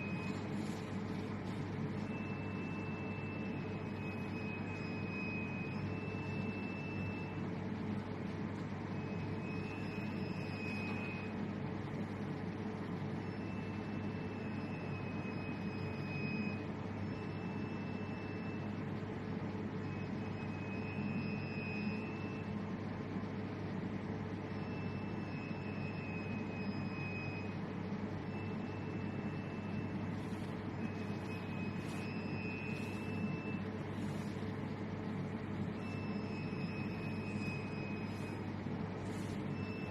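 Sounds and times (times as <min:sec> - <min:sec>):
machine hum with fan noise: 0:00.0 - 0:39.9
high pure tone: 0:28.3 - 0:39.9.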